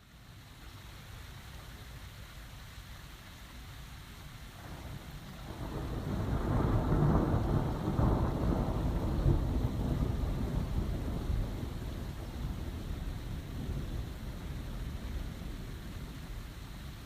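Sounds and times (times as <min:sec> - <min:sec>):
steady rain: 0:00.0 - 0:17.0
thunder rumbling: 0:04.7 - 0:16.2.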